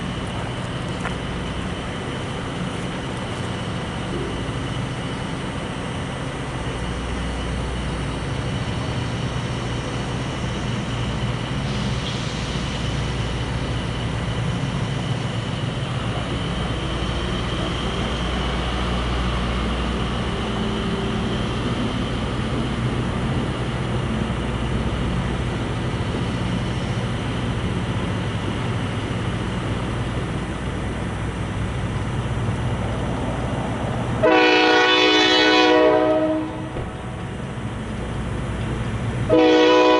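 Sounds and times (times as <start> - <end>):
diesel locomotive rumbling: 0.0 - 39.9
locomotive air horn: 34.2 - 36.8, 39.3 - 39.9.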